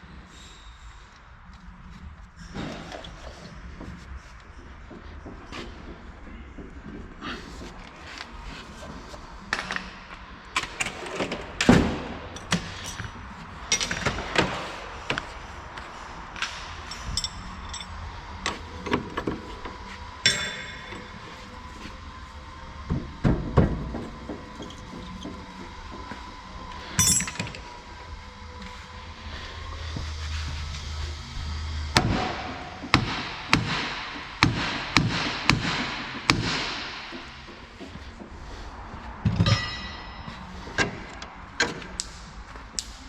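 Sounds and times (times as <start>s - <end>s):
metallic tool knocks and clanks: 39.3s - 40.1s.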